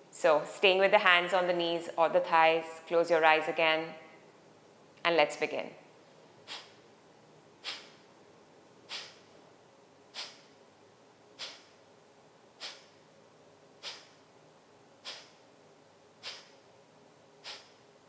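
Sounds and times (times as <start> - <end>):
forceful nasal exhalations: 6.4 - 6.8, 7.6 - 8.0, 8.9 - 9.3, 10.1 - 10.6, 11.4 - 11.8, 12.6 - 13.0, 13.8 - 14.2, 15.0 - 15.4, 16.2 - 16.6, 17.4 - 17.8
soft inhale: 6.4 - 6.8, 7.6 - 8.1, 8.9 - 9.4, 10.1 - 10.6, 11.4 - 11.8, 12.6 - 13.1, 13.8 - 14.3, 15.0 - 15.4, 16.2 - 16.6, 17.4 - 17.8.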